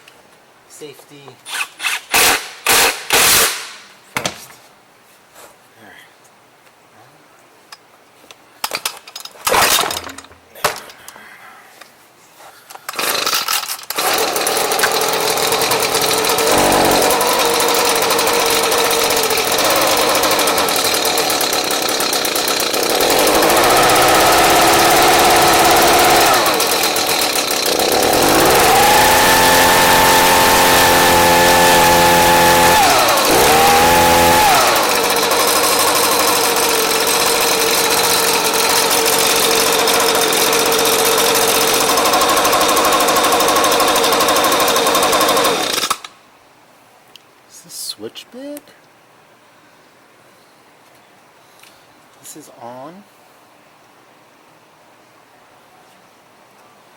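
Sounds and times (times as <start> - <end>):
small two-stroke engine revving: 13.0 - 46.0.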